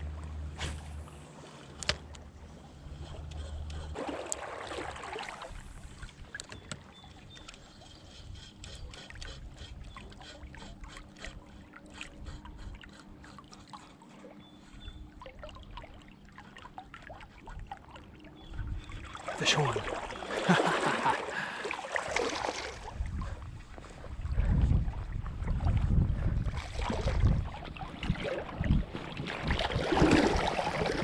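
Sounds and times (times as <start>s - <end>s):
creek water trickling and gurgling: 0.0s - 31.0s
rush of water: 4.0s - 6.5s, 19.1s - 23.0s, 26.5s - 31.0s.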